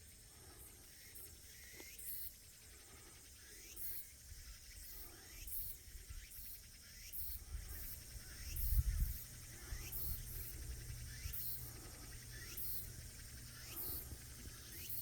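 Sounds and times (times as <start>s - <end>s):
insects trilling: 0.0s - 15.0s
wind rumble on microphone: 7.4s - 11.4s.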